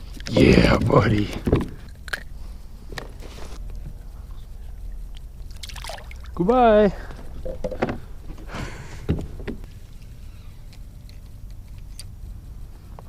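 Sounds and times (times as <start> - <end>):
steady low rumble: 0.0 - 13.0
water splashing: 5.4 - 6.4.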